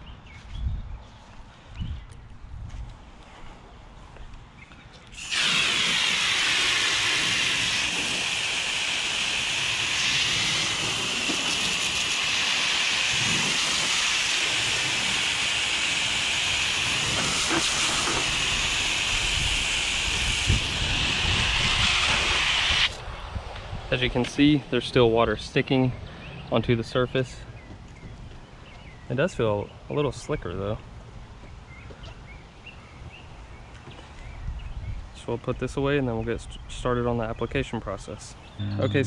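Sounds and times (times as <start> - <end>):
water spraying on windshield: 5.2 - 22.9.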